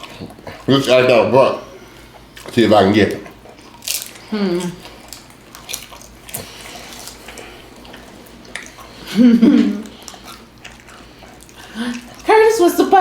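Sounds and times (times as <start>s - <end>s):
chewing crunches and clicks: 2.0s - 9.1s, 9.8s - 12.6s.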